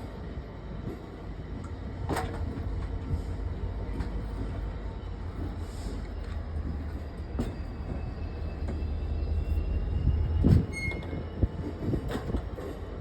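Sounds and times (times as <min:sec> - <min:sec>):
train wagons rumbling on rails: 0:00.0 - 0:13.0
faint wheel squeal: 0:06.8 - 0:11.4.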